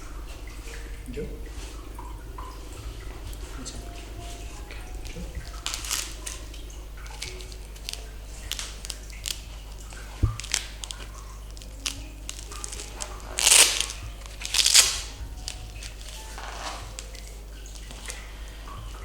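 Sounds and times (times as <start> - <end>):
rustling and crinkling: 2.4 - 19.0.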